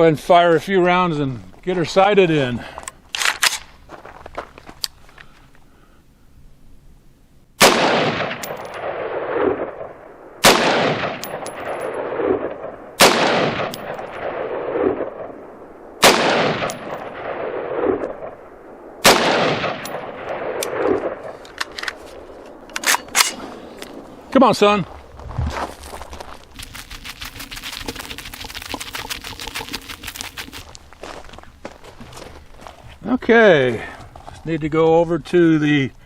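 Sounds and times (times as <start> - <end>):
rifle shots with echo: 7.6 - 21.3.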